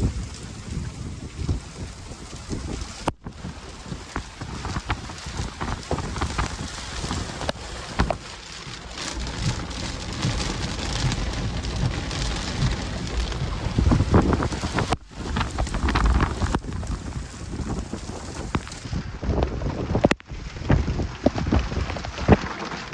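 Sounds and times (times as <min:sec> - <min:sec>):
heavy wind-driven rain: 0:00.0 - 0:22.9
wind buffeting microphone: 0:00.0 - 0:22.9
raindrops ticking close by: 0:02.3 - 0:22.9.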